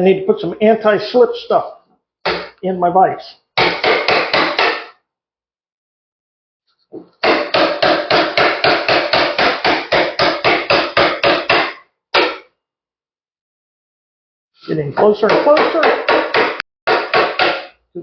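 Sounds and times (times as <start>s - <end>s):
mallet striking wood chisel: 2.2s - 2.6s, 3.6s - 5.0s, 7.0s - 12.5s, 15.0s - 17.8s.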